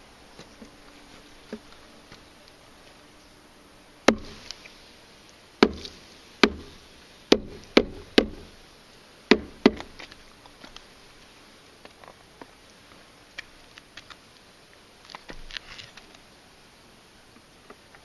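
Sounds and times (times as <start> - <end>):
wooden beehive parts knocking: 5.6 - 6.7, 7.3 - 8.5, 9.3 - 10.2.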